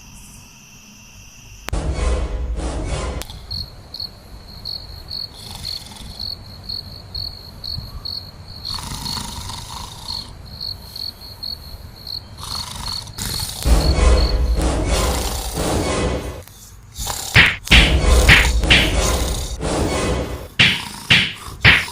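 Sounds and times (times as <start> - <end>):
crickets chirping: 0.0 - 1.7, 3.2 - 14.4
loud low noisy burst: 1.7 - 3.5, 13.6 - 16.4, 17.4 - 20.7.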